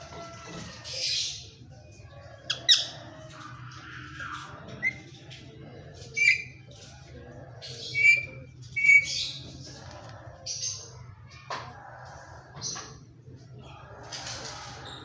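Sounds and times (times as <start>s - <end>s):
parakeet squawking: 2.4s - 5.1s, 6.2s - 6.6s, 7.8s - 9.5s.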